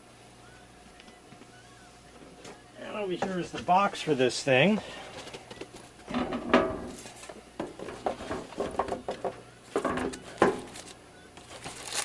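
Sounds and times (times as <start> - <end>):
knocks and clatter of parts: 5.2 - 10.9.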